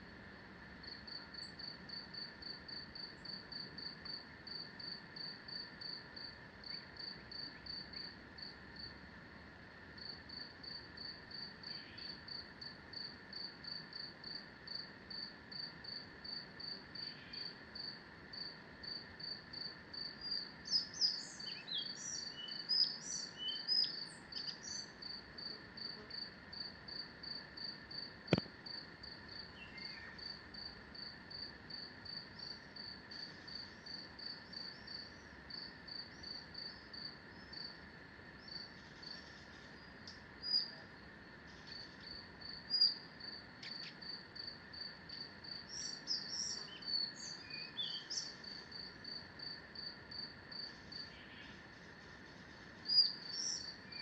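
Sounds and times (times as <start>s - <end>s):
hum of insects: 0.0s - 54.0s
high insect chirp: 0.1s - 54.0s
bird song: 11.7s - 12.2s, 17.0s - 17.6s, 20.2s - 25.0s, 29.5s - 30.4s, 38.4s - 40.8s, 41.5s - 43.0s, 45.7s - 48.4s, 51.0s - 51.6s, 52.9s - 54.0s.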